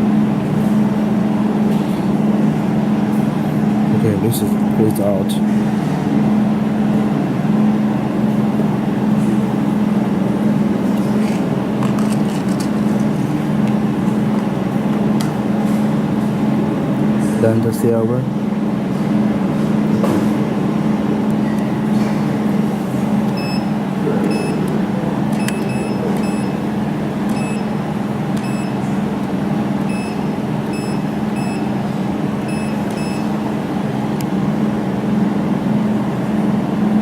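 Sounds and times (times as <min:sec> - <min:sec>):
welding machine humming: 0:20.5 - 0:36.4
short high beeps: 0:24.3 - 0:24.6, 0:25.4 - 0:26.6, 0:29.9 - 0:31.7, 0:32.5 - 0:33.3.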